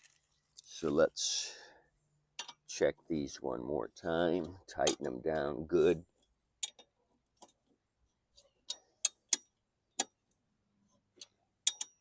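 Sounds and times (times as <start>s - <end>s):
wrench clicking on bolts: 8.7s - 10.2s, 11.2s - 12.0s.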